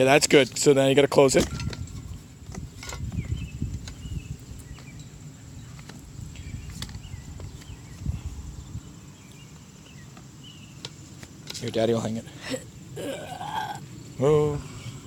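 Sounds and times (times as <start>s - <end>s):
bird chirps: 3.1s - 10.9s.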